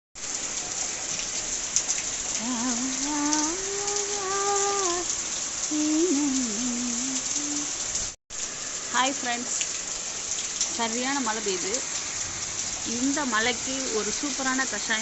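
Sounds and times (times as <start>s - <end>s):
heavy rain pouring: 0.2s - 15.0s
person humming: 2.4s - 5.1s, 5.7s - 7.8s.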